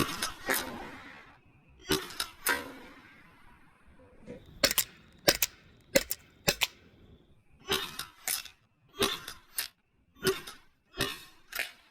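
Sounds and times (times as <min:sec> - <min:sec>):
paintball pistol shots: 0:04.6 - 0:06.8.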